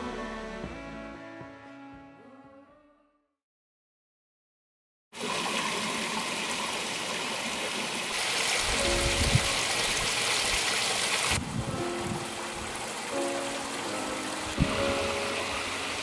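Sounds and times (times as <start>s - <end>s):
stream water rushing: 5.2s - 16.0s.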